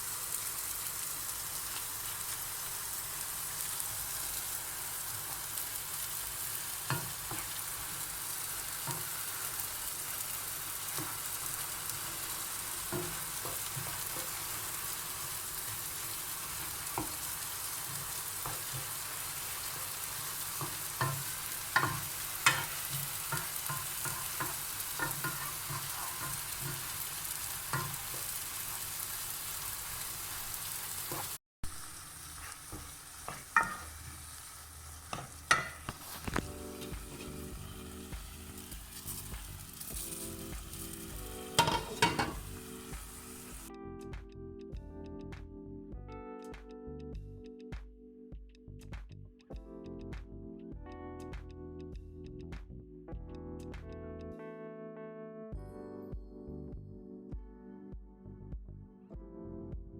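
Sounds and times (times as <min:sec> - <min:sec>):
food sizzling in a pan: 0:00.0 - 0:43.7
utensil scraping a pan: 0:20.6 - 0:28.3, 0:32.3 - 0:34.2, 0:35.1 - 0:42.5.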